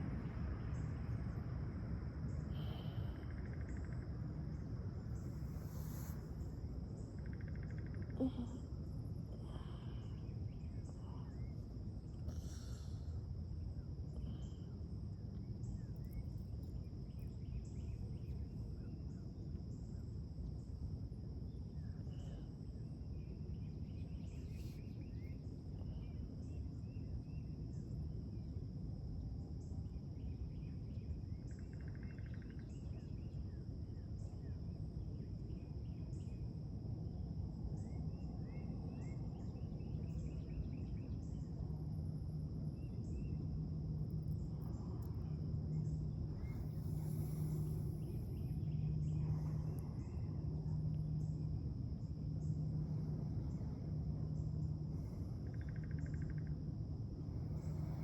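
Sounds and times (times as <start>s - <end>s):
insects trilling: 0.6s - 28.5s, 29.6s - 58.0s
low rumble: 41.6s - 58.0s.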